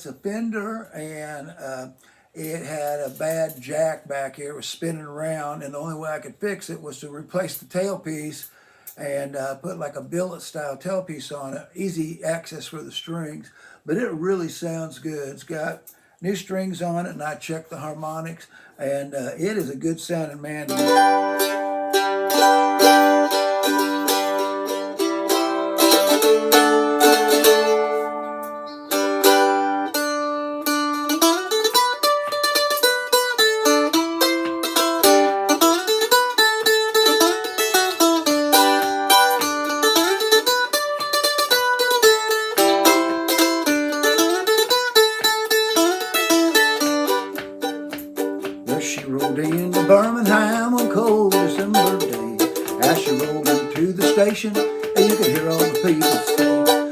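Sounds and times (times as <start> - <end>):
mandolin playing: 20.6 - 56.9.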